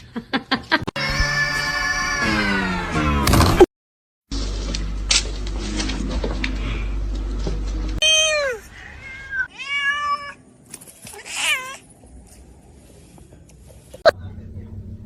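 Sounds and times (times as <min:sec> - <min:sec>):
cat meowing: 0:08.0 - 0:10.4.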